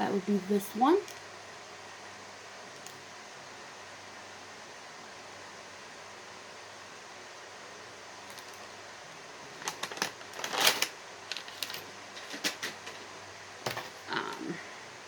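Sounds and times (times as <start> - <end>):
items clicking and tapping: 9.6 - 14.4.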